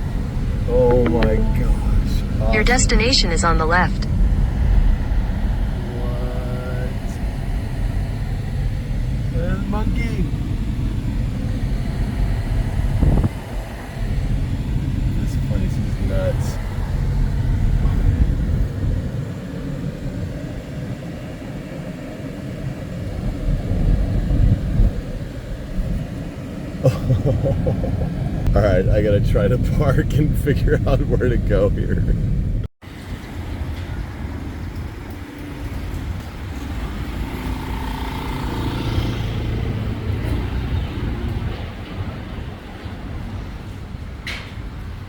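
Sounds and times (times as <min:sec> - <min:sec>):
faint held whine: 0:00.0 - 0:19.0
road noise: 0:00.0 - 0:45.0
vehicle engine rumble: 0:00.0 - 0:45.0.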